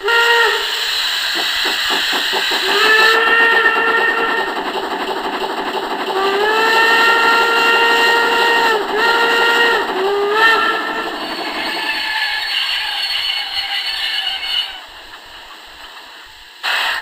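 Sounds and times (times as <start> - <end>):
steam locomotive whistle: 0.0 - 1.3, 2.6 - 4.6, 6.2 - 14.9
train running rumble: 0.0 - 17.0.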